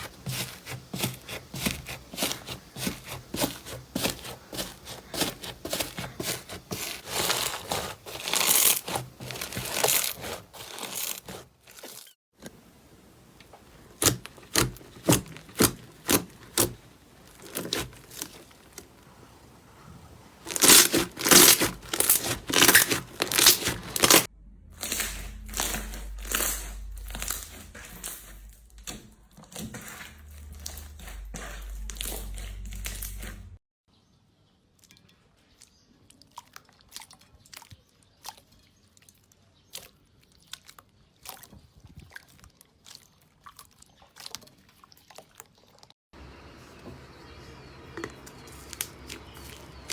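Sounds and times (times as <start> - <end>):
slime crackling and popping: 3.6 - 12.2, 13.7 - 19.0, 20.4 - 28.9.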